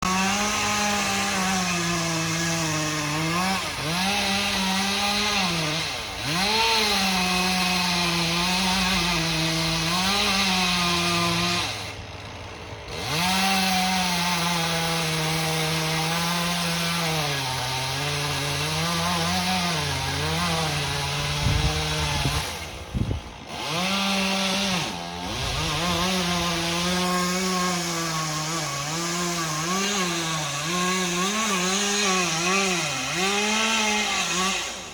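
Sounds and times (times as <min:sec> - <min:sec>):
chainsaw cutting wood: 0:00.0 - 0:34.9.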